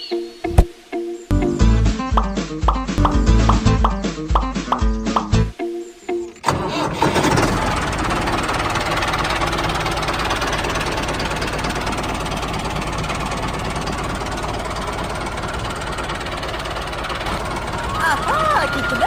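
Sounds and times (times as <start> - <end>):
small tractor engine knocking: 6.5 - 19.0.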